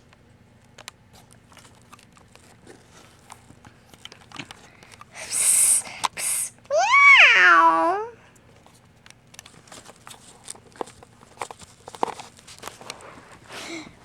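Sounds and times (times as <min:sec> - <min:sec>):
person hissing: 0:05.2 - 0:08.1.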